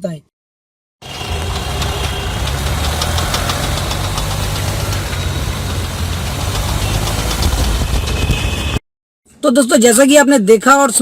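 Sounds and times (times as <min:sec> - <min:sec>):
car engine running: 0:01.0 - 0:08.7
rapid drive shaft clicking: 0:01.4 - 0:08.1.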